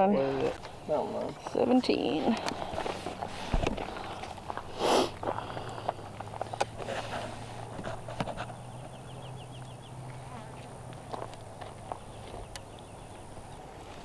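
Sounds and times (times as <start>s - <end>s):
footsteps outdoors: 0.0s - 14.0s
loud rustle: 0.2s - 9.0s.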